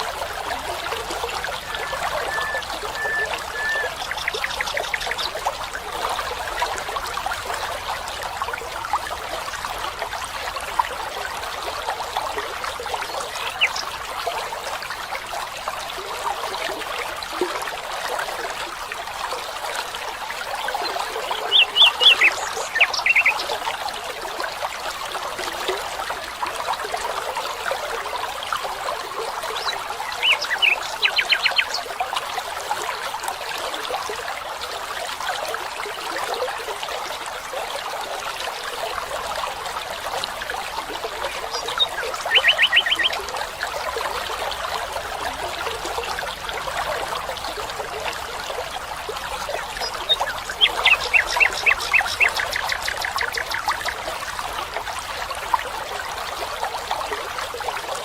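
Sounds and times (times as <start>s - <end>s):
stream water trickling: 0.0s - 58.0s
bird calls: 1.1s - 5.4s, 21.3s - 23.5s, 30.2s - 31.9s, 41.5s - 43.2s, 49.7s - 54.0s.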